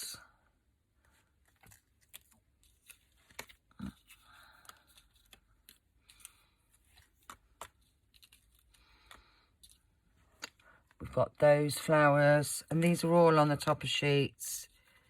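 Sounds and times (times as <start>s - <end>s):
paper rustling: 1.0s - 11.1s.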